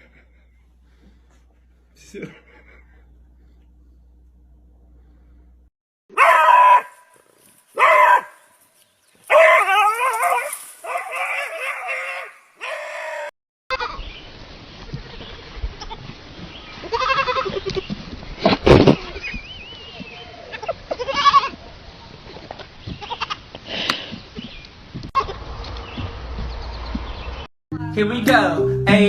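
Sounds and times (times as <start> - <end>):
animal wavering cries: 9.3 - 13.9.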